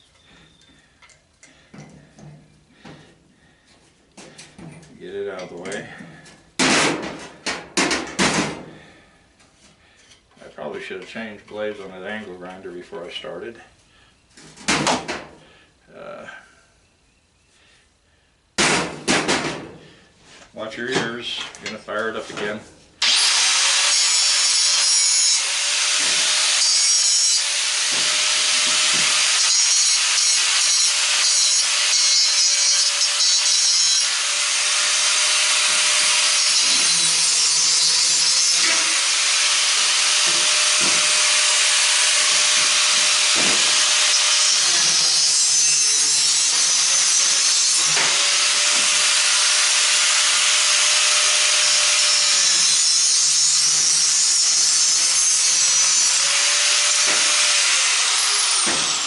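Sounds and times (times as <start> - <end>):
angle grinder cutting metal: 23.0 - 59.0.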